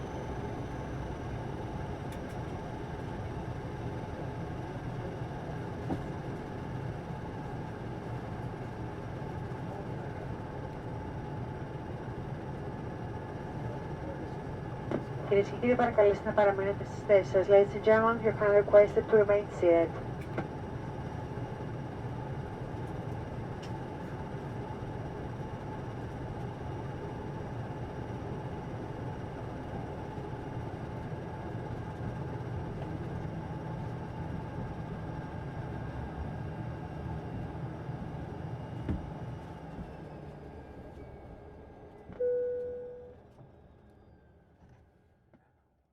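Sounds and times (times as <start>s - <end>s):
airliner cabin engine hum: 0.0s - 43.7s.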